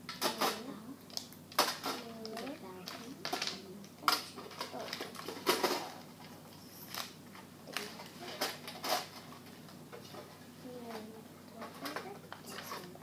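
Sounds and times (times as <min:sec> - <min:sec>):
wrapping crinkling: 0:01.1 - 0:09.8.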